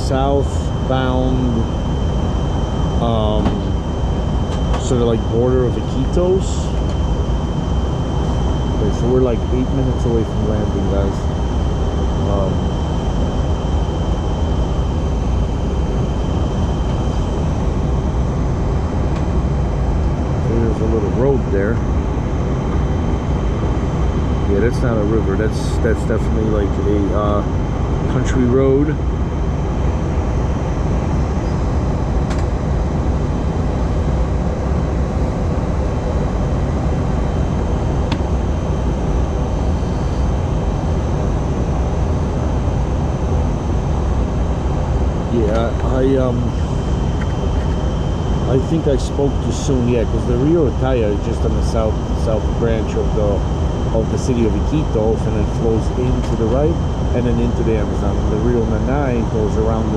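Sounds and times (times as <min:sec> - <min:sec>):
airliner cabin engine noise: 0:00.0 - 0:59.9
thin high whine: 0:00.0 - 0:59.9
air rushing in aircraft cabin: 0:02.6 - 0:07.0, 0:07.6 - 0:11.4, 0:44.7 - 0:59.9.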